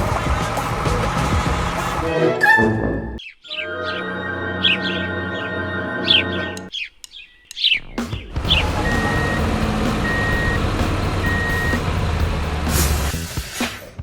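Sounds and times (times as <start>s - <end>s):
birds chirping: 0.0s - 2.1s, 3.2s - 12.6s
heavy truck engine running: 0.0s - 2.2s, 8.3s - 13.8s
music: 0.0s - 6.7s, 7.5s - 14.0s
reversing alarm beeps: 8.7s - 11.8s.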